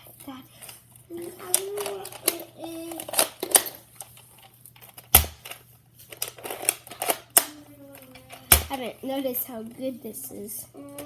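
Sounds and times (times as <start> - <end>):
rifle parts clicking and rattling: 1.5 - 7.4.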